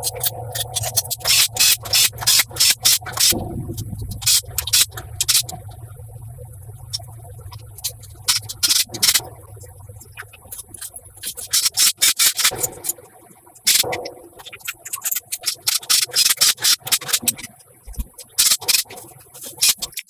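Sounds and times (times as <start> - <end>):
low steady hum: 0.0 - 15.8.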